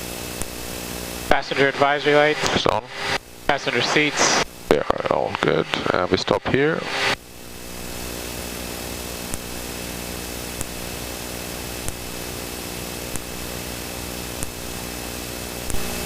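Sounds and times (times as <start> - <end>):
jet engines humming and whining: 0.0 - 8.1.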